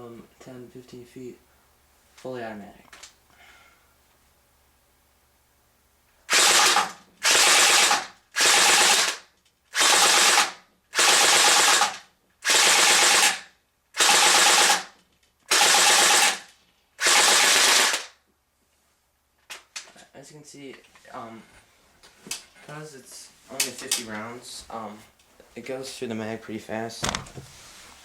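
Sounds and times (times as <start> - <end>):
airsoft gun firing bursts: 6.3 - 14.9, 15.5 - 18.2.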